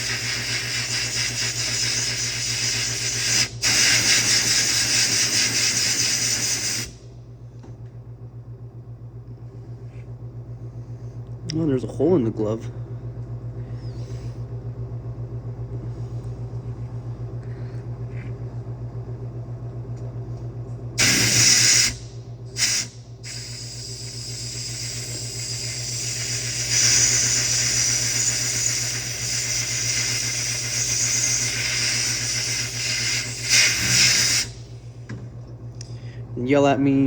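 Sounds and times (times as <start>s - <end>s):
compressed air blast hissing: 0.0s - 7.0s, 21.0s - 34.7s
pulsing motor hum: 0.0s - 36.2s.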